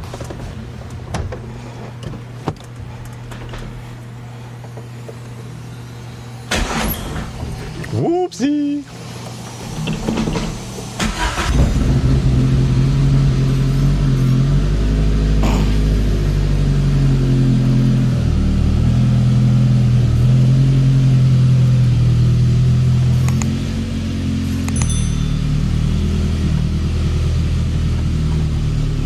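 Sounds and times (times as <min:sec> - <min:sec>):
car engine cranking and starting: 0:06.5 - 0:07.9, 0:09.3 - 0:29.0
car engine idling: 0:11.0 - 0:29.0.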